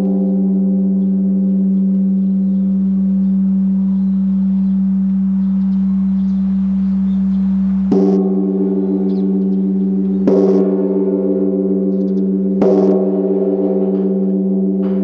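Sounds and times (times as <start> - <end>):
low ringing hum: 0.0 - 15.0
metallic bell strikes: 7.0 - 15.0.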